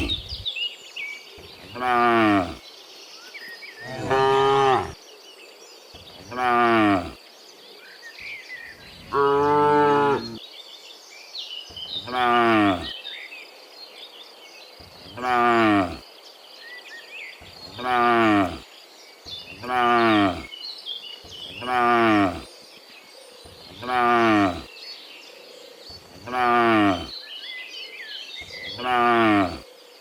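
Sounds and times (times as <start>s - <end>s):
cattle mooing: 1.7s - 2.6s, 3.8s - 5.0s, 6.3s - 7.2s, 9.1s - 10.4s, 12.0s - 12.9s, 15.2s - 16.0s, 17.7s - 18.6s, 19.6s - 20.5s, 21.6s - 22.4s, 23.8s - 24.7s, 26.2s - 27.1s, 28.7s - 29.6s.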